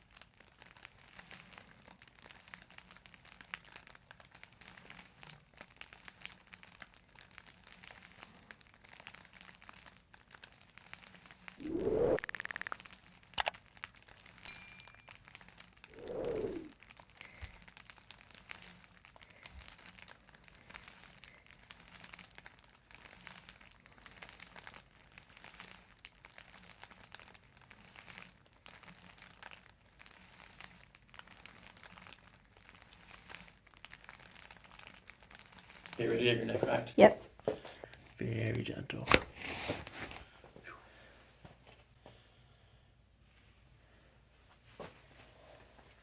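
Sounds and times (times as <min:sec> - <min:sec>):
faint crinkling and rustling: 0:00.0 - 0:11.6, 0:12.2 - 0:16.0, 0:16.6 - 0:42.5, 0:43.2 - 0:46.0
short swelling sound: 0:11.6 - 0:12.5
small scattered clicks: 0:12.2 - 0:14.4.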